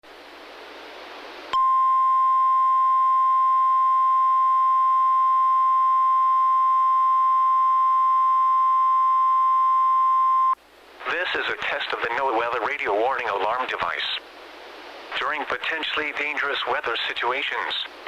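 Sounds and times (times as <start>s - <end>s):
radio static hiss: 10.9s - 18.0s.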